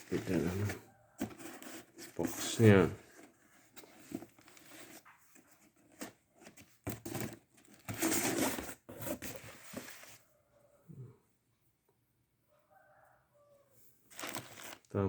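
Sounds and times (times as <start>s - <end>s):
cardboard box rustling: 0.0s - 10.2s, 14.1s - 14.9s.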